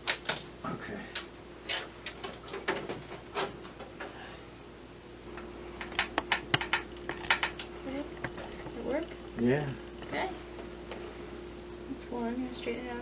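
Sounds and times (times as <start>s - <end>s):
fan and screws clicking and scraping: 1.1s - 4.2s, 5.3s - 9.2s.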